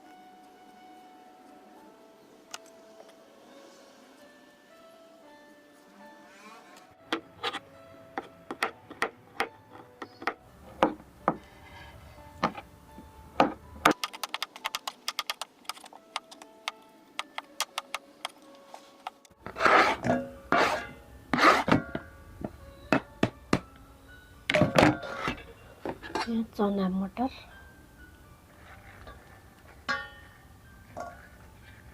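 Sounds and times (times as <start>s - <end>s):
faint background music: 0.0s - 31.9s
scraping and rustling: 17.8s - 22.0s, 24.6s - 26.3s, 28.5s - 31.9s.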